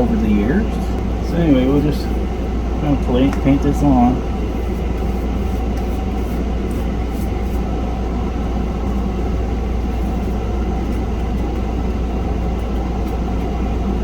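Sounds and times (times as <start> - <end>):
machinery humming: 0.0 - 14.0
paintbrush scratching: 4.4 - 7.7, 9.8 - 13.7.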